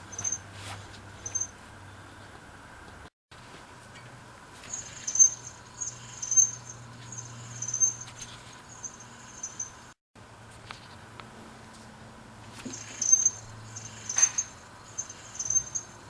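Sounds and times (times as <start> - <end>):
bicycle dynamo squeaking: 1.2 - 1.5, 4.6 - 10.0, 12.6 - 16.0.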